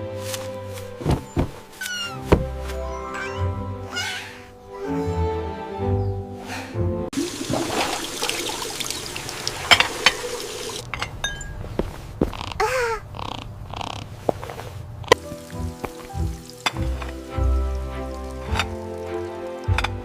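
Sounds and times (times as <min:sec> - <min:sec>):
gentle background music: 0:00.0 - 0:10.1, 0:15.1 - 0:20.0.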